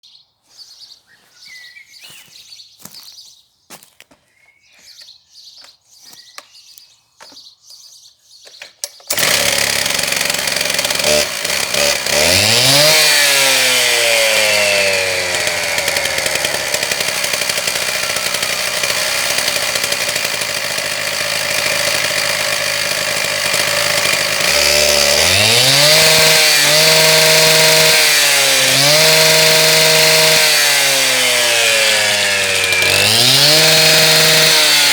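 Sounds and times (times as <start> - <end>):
concrete saw engine revving: 9.1 - 34.9.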